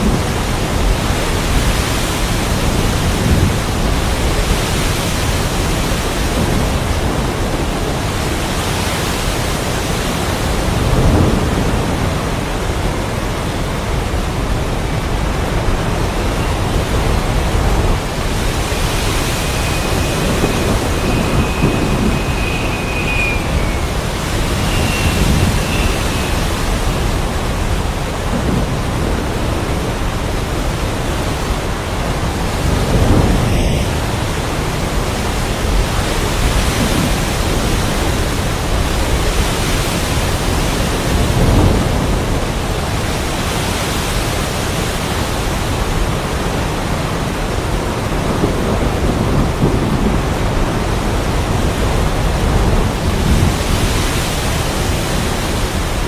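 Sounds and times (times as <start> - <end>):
heavy rain falling: 0.0 - 56.0
rolls of thunder: 17.5 - 29.3.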